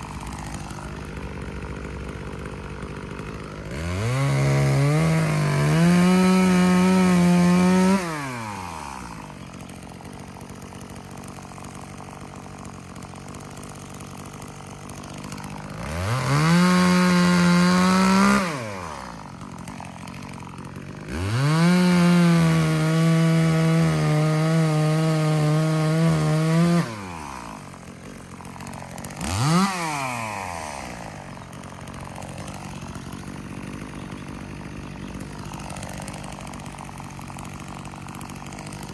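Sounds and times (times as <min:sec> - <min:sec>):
chainsaw engine revving: 0:00.0 - 0:38.9.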